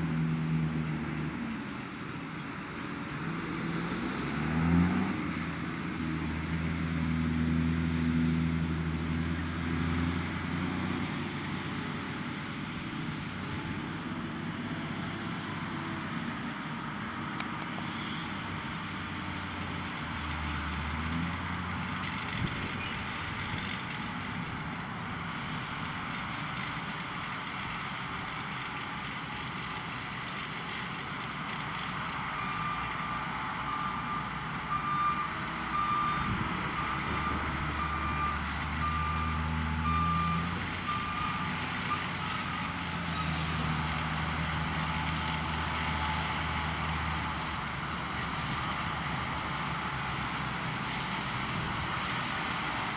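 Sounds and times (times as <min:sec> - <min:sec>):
tractor engines droning: 0:00.0 - 0:52.9
reversing alarm beeping: 0:32.4 - 0:42.3.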